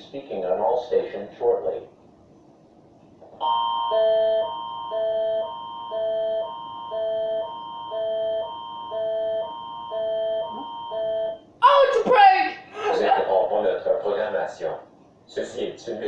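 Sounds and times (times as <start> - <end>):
emergency alert attention signal: 3.4 - 11.5.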